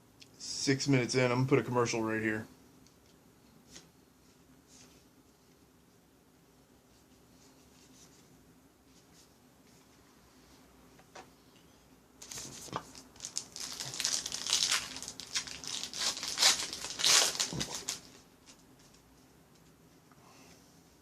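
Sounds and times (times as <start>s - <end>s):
wrapper being torn and crinkled: 12.2s - 18.2s.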